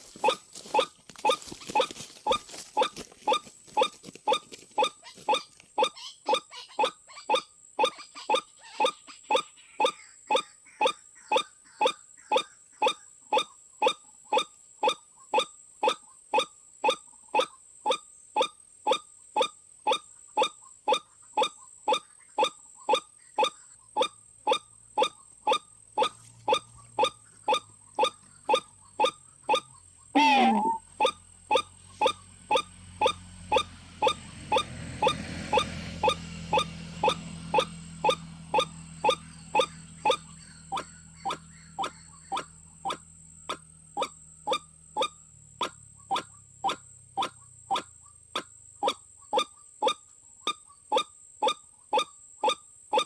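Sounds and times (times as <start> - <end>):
waterhen calling: 0.0 - 53.0
bird call gliding down in pitch: 0.2 - 45.2.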